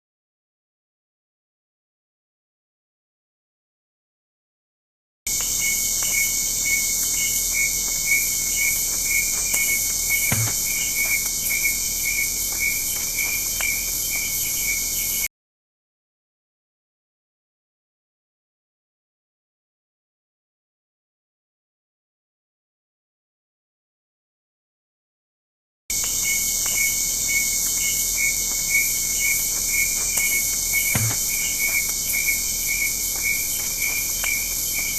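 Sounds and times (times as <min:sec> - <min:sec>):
insect pulsing low chirp: 0:05.3 - 0:15.3, 0:25.9 - 0:34.9
insects trilling: 0:05.3 - 0:15.3, 0:25.9 - 0:34.9.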